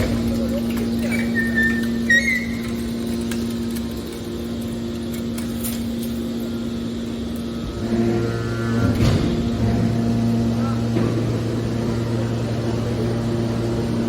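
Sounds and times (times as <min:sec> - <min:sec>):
electric motor and pump hum: 0:00.0 - 0:14.0
deeper hum: 0:06.4 - 0:14.0.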